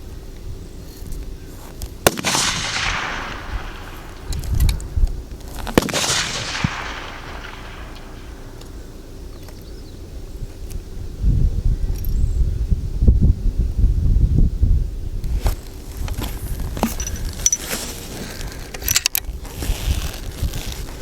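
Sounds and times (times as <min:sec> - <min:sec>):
rifle shots with echo: 0:02.0 - 0:04.9, 0:05.5 - 0:08.8.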